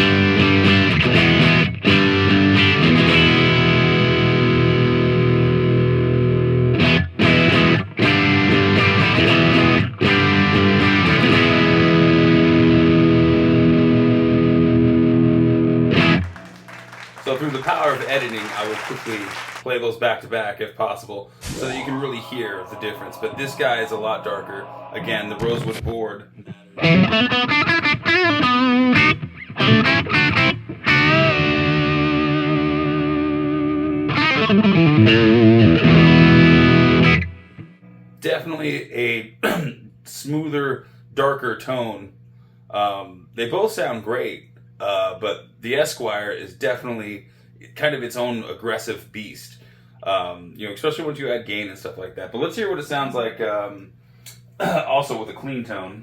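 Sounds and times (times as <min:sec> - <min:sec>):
distorted electric guitar riff: 0:00.0 - 0:16.3, 0:21.4 - 0:37.7.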